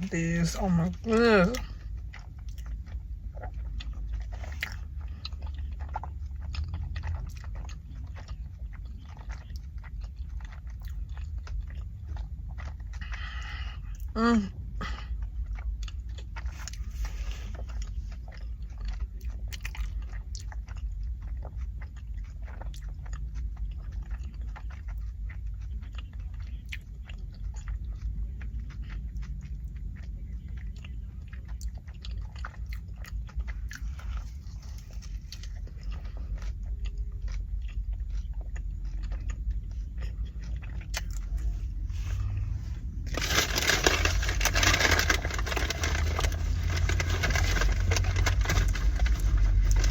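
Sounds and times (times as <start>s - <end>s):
steady low hum: 0.0s - 49.9s
chewing with wet mouth smacks: 0.1s - 49.9s
loud rustling: 43.1s - 49.9s.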